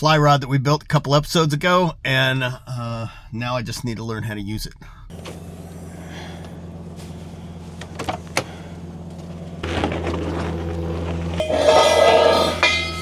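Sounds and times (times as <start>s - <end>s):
vehicle engine humming: 5.1s - 13.0s.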